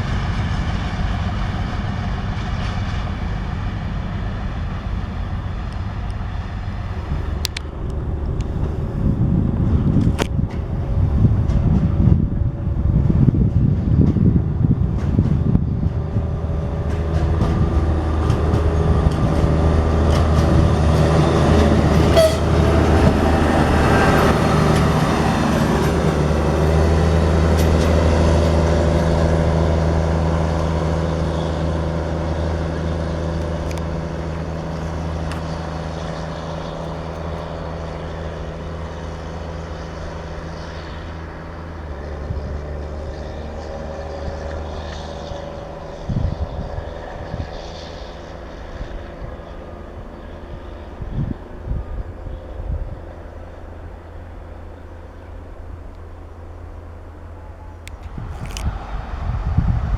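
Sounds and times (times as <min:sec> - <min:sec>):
diesel train engine drone: 0:00.0 - 0:59.9.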